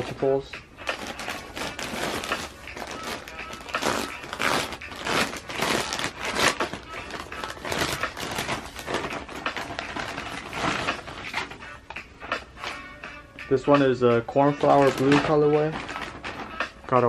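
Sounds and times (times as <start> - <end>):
plastic bag crinkling and rustling: 0.8 - 11.6, 14.6 - 16.6.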